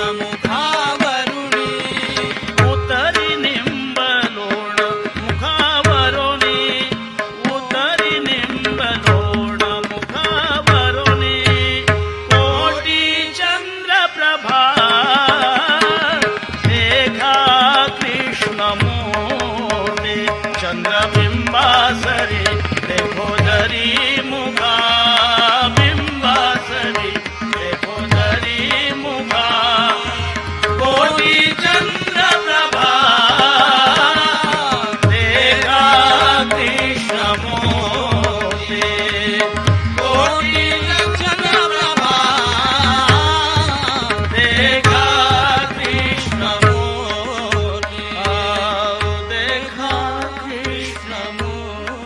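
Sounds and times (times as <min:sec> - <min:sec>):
ornamented devotional melody: 0:00.0 - 0:52.0.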